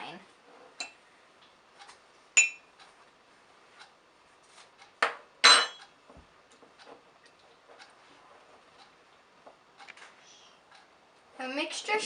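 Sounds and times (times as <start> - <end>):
crockery knocking and ringing: 5.0 - 5.8.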